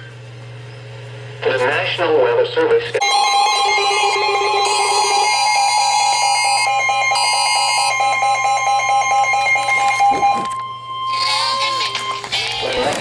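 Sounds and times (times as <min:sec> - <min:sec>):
two-tone alert signal: 0:03.0 - 0:12.8.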